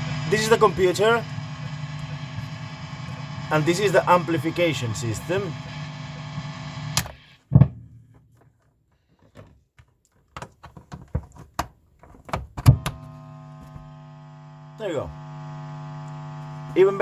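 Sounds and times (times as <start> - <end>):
mains hum and buzz: 0.0 - 7.4, 12.6 - 17.0.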